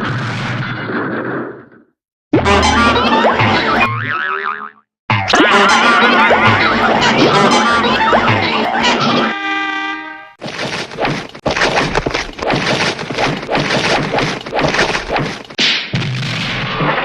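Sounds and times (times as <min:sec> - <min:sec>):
horn-like tone: 0:02.4 - 0:03.3, 0:08.9 - 0:10.4
cartoon fight whacks and crashes: 0:10.4 - 0:17.0.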